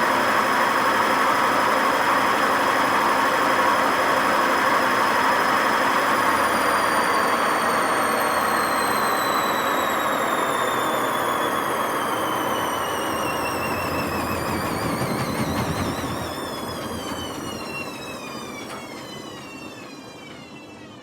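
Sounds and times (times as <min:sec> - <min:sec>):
washing machine whine falling in pitch: 0:01.7 - 0:21.0
rough drum bearing noise: 0:13.3 - 0:18.1.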